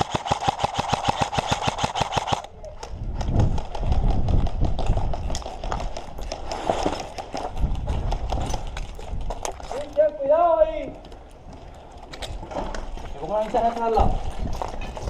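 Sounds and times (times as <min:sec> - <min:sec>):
airsoft gun full-auto burst: 0:00.0 - 0:02.5.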